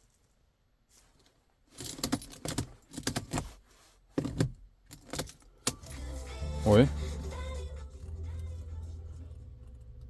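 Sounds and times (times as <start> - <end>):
car keys jangling: 1.7 - 3.6, 4.2 - 6.0.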